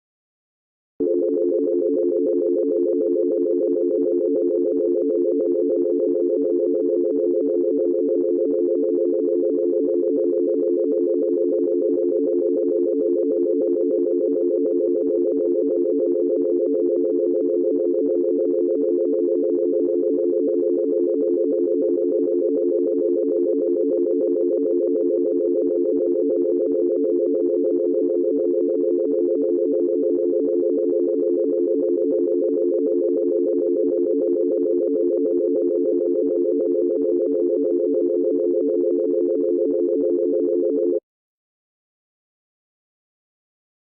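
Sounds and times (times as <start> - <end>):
synthesized dial tone: 1.0 - 41.0.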